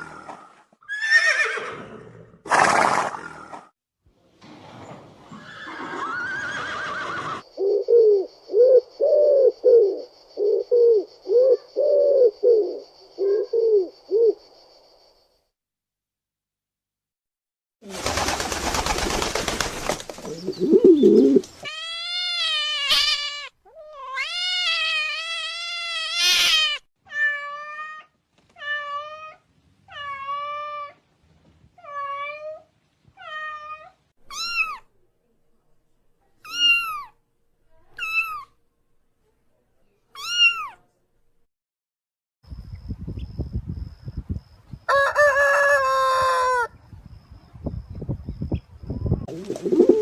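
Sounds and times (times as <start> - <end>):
cat meowing: 21.6 - 31.0, 31.8 - 34.9, 36.4 - 37.2, 37.9 - 38.5, 40.2 - 40.8.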